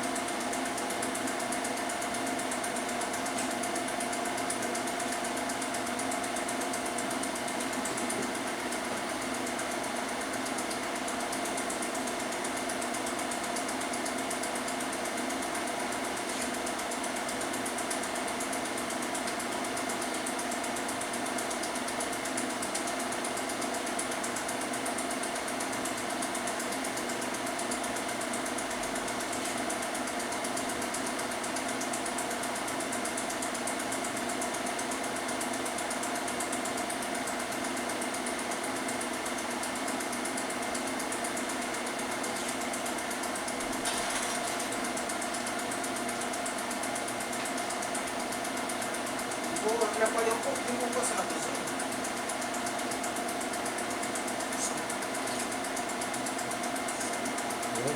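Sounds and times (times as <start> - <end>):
film projector whirring and clattering: 0.0 - 57.9.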